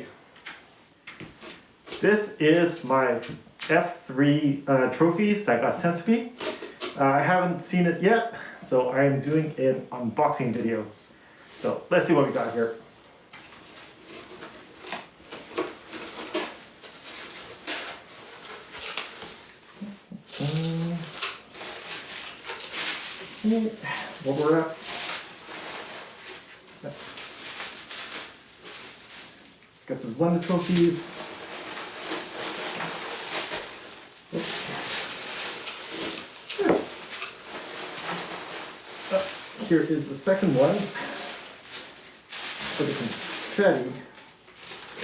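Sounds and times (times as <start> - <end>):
packaging rustling and tearing: 11.5 - 45.0
person humming: 19.8 - 21.2.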